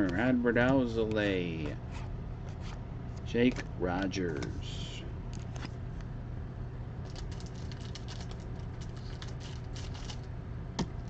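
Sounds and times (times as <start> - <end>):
low hum: 0.0 - 11.0
cards ticking and rustling: 7.0 - 10.3.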